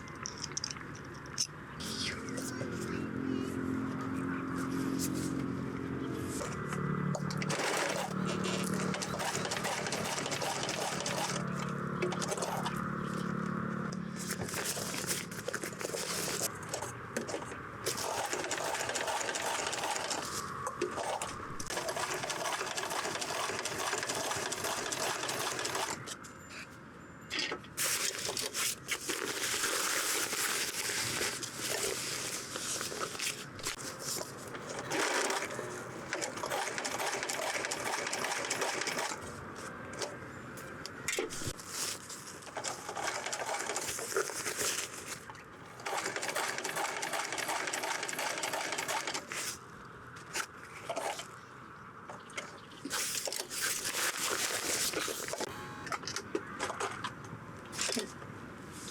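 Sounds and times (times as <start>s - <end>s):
sewing machine stitching fabric: 7.2s - 12.8s, 17.9s - 26.0s, 33.2s - 39.3s, 42.4s - 44.7s, 45.8s - 49.6s.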